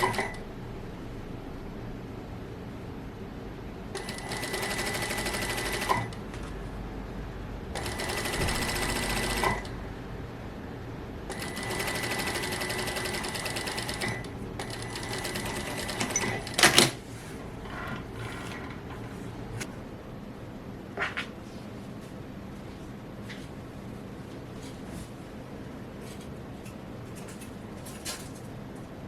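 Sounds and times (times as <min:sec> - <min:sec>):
sewing machine stitching: 0:00.0 - 0:00.4, 0:04.0 - 0:06.2, 0:07.8 - 0:09.7, 0:11.3 - 0:17.0, 0:17.6 - 0:19.7.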